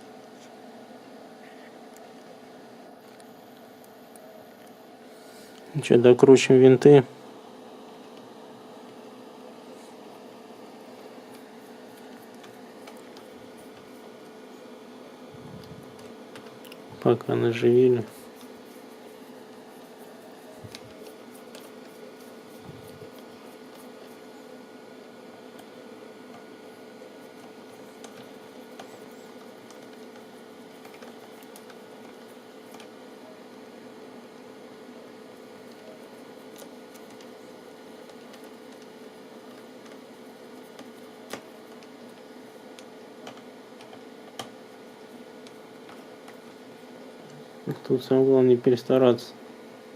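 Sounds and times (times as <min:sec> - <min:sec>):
steady hum: 0:00.0 - 0:49.9.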